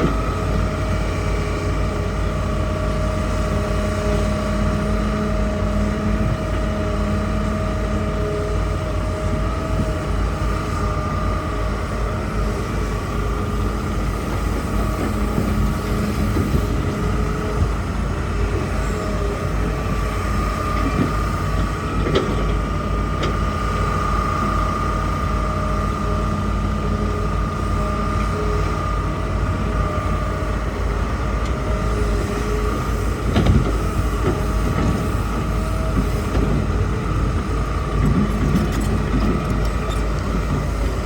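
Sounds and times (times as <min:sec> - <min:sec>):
excavator diesel engine running: 0:00.0 - 0:41.0.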